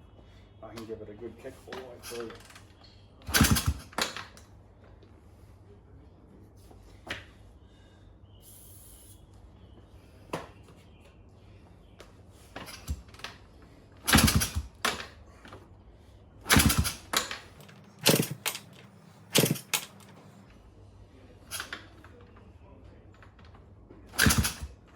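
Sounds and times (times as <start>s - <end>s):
motorcycle being kick-started: 2.0s - 4.4s, 12.6s - 13.4s, 14.0s - 15.2s, 16.5s - 20.4s, 21.5s - 22.2s, 24.1s - 24.9s.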